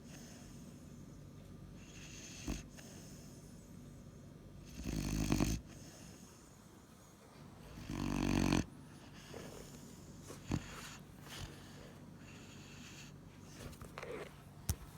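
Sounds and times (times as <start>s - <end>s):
puppy snoring: 1.8s - 3.4s, 4.6s - 6.6s, 7.6s - 14.4s.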